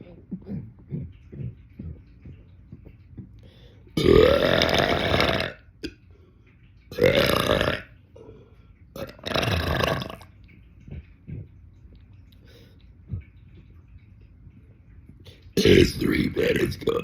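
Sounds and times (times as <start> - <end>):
man belching: 4.0 - 6.0, 6.9 - 7.9, 9.0 - 10.3, 15.6 - 16.1.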